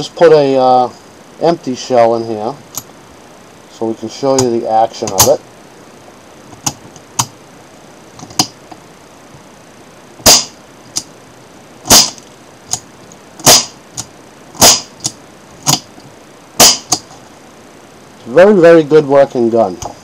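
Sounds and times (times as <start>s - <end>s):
revolver loud sharp snaps: 10.2s - 11.1s, 16.6s - 17.0s.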